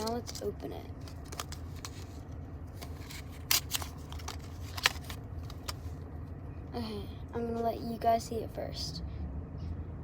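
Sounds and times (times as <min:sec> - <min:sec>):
plastic packaging crackling: 0:00.0 - 0:05.8.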